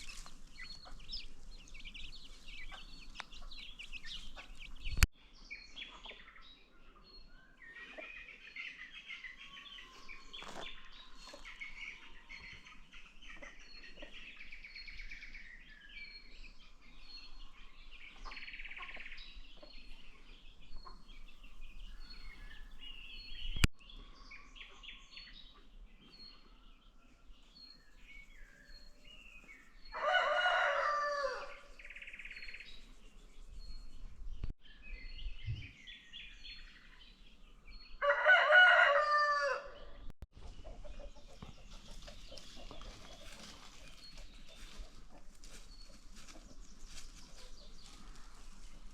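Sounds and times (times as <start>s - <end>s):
baby chicks peeping: 0.0s - 5.1s, 39.2s - 48.9s
chickens clucking: 0.0s - 5.1s, 5.8s - 7.1s, 7.7s - 14.7s, 17.3s - 24.1s, 39.4s - 48.9s.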